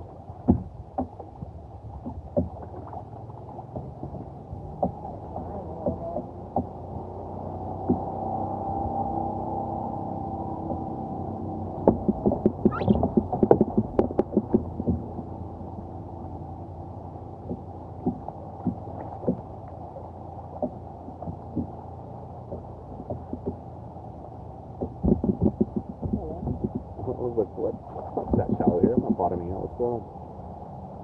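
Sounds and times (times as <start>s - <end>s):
dull water noise: 0.0s - 31.0s
knocks against kayak hull: 0.4s - 2.7s, 4.6s - 6.8s, 24.8s - 26.9s.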